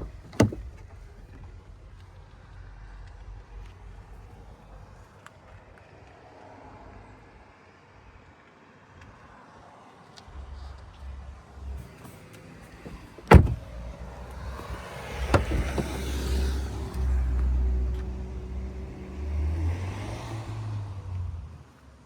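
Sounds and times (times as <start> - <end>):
car door shutting: 0.0 - 1.0, 11.8 - 16.7.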